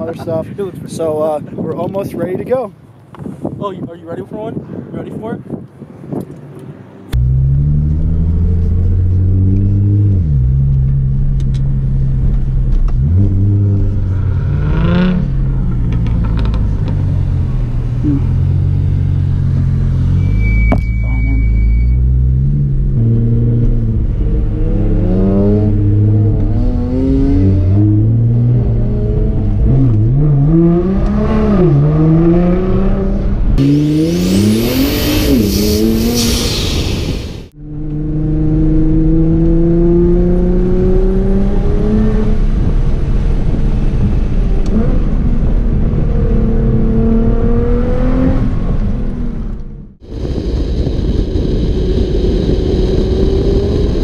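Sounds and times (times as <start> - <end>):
car engine revving and accelerating: 6.4 - 20.5, 21.2 - 54.0
loud hiss: 33.6 - 37.5.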